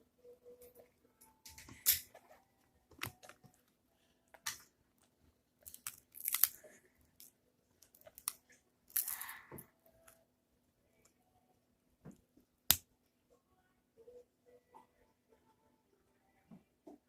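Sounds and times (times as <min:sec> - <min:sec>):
crunching wafers: 0:05.6 - 0:10.2.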